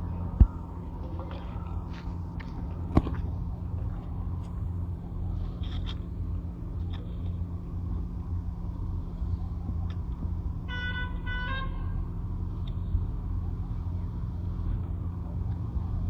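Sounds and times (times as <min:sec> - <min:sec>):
steady low rumble: 0:00.0 - 0:16.0
vehicle horn toots: 0:10.7 - 0:12.0.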